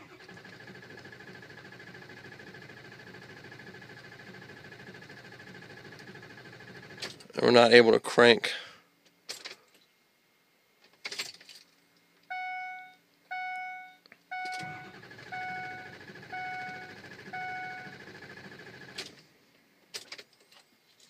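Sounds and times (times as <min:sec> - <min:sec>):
starter cranking diesel engine: 0:00.0 - 0:07.2, 0:14.4 - 0:19.2
dashboard warning chime beeping: 0:12.3 - 0:18.0.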